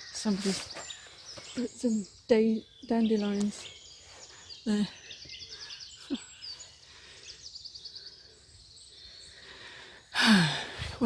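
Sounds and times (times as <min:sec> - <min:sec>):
bird chirps: 0:00.0 - 0:10.5
songbirds singing: 0:00.0 - 0:11.0.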